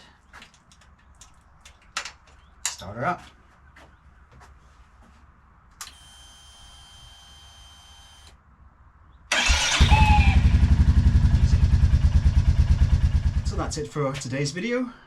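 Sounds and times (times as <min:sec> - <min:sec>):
faint steady whine: 0:05.8 - 0:08.4
motorcycle engine starting and idling: 0:09.3 - 0:14.0.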